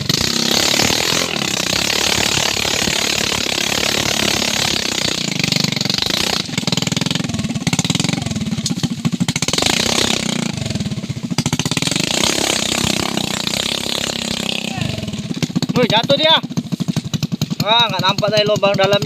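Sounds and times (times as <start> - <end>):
motorcycle engine revving: 0.0 - 19.0.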